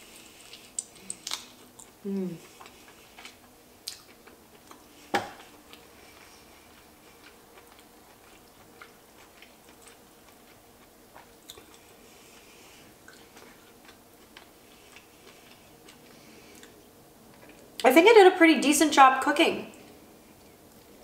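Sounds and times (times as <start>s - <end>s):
faint chewing: 0.0s - 17.9s, 19.7s - 21.0s.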